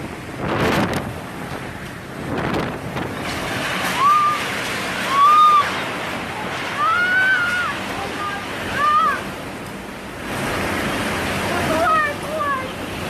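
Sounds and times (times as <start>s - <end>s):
storm wind roaring: 0.0s - 13.0s
high wailing tones: 3.9s - 9.3s.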